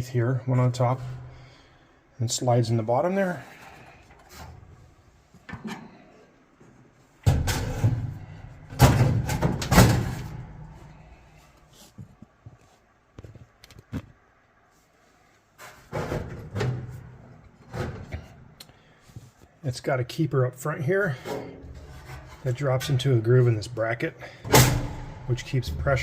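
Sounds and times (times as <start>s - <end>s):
metal clunks and scraping: 0.5s - 1.8s, 3.4s - 12.3s, 15.6s - 19.4s, 21.0s - 26.0s.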